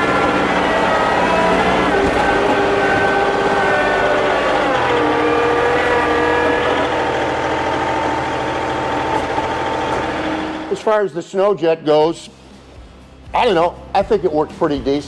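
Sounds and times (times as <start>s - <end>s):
tractor diesel engine under load: 0.0s - 11.0s.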